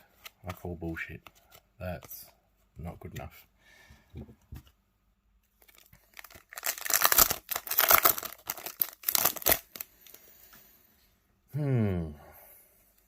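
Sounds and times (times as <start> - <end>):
card pack wrapper tearing: 5.6 - 10.2.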